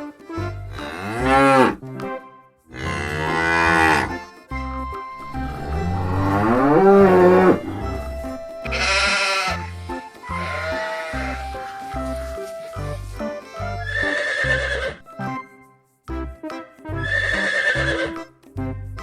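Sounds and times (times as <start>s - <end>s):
background music with low beat: 0.0s - 19.0s
cows mooing: 0.8s - 1.8s, 2.7s - 4.2s, 5.2s - 9.7s, 10.3s - 11.6s, 13.9s - 15.0s.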